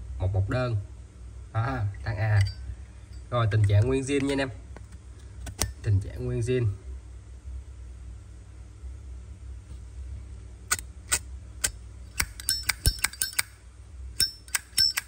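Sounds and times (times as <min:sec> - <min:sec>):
metallic clinks with bright ring: 0:02.3 - 0:03.3, 0:12.3 - 0:13.6, 0:14.2 - 0:15.0.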